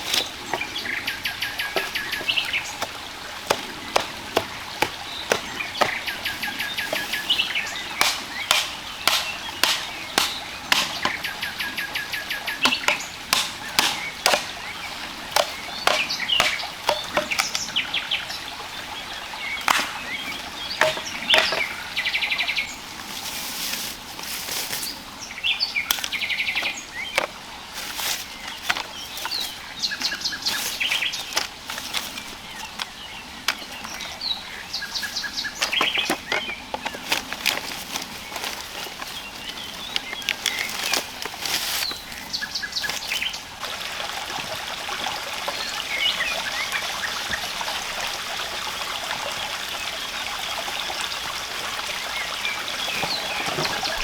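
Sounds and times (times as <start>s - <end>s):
birds chirping and trilling: 0.0s - 23.0s, 24.2s - 43.6s, 45.3s - 47.8s, 52.0s - 54.0s.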